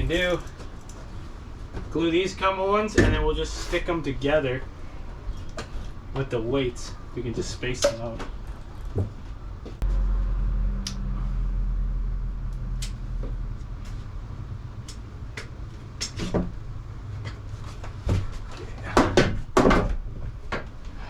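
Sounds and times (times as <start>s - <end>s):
steady low rumble: 8.3s - 21.0s
wooden knocks and clunks: 17.2s - 20.7s.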